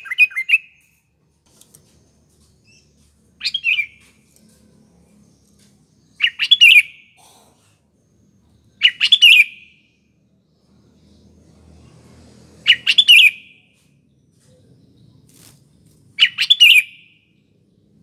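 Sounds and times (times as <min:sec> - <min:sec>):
bird singing chattering whistles: 0:06.2 - 0:07.0, 0:08.8 - 0:09.7, 0:16.2 - 0:17.0.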